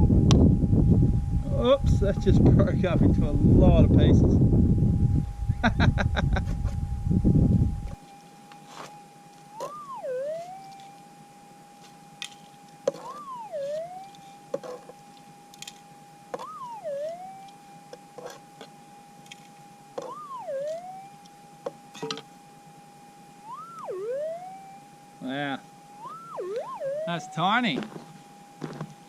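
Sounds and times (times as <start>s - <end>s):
metal detector target signal: 9.5s - 11.0s, 12.9s - 14.9s, 16.4s - 17.6s, 20.0s - 22.2s, 26.0s - 28.0s
metal detector threshold tone: 9.5s - 11.0s, 12.9s - 14.8s, 16.4s - 17.6s, 20.0s - 21.2s, 23.4s - 28.1s.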